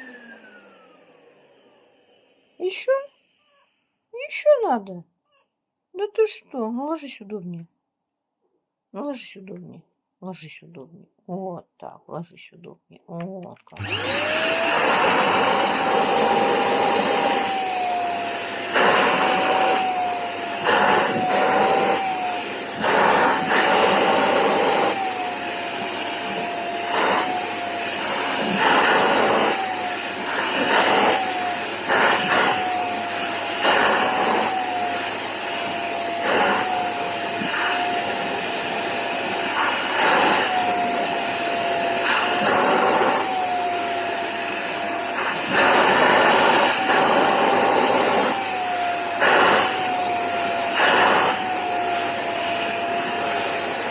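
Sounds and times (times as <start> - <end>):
vacuum cleaner running: 0.0 - 3.6, 13.7 - 53.9.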